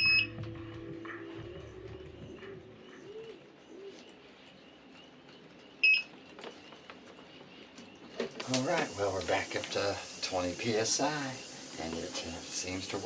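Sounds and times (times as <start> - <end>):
bird cooing: 0.0 - 5.2.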